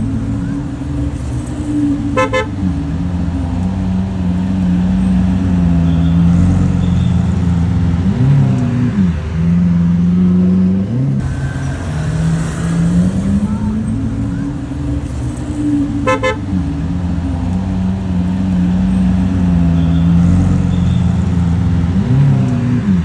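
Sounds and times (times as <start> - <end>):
car engines running: 0.0 - 23.0
engine revving: 0.0 - 23.0
car horn toots: 2.0 - 2.7, 5.1 - 7.8, 15.7 - 16.7.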